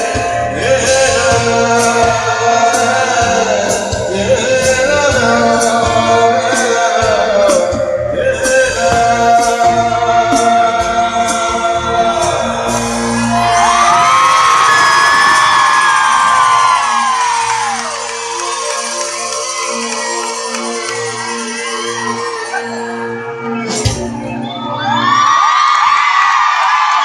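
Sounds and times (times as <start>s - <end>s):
band with steady drum beat: 0.0s - 18.7s
man singing long notes: 0.0s - 24.5s.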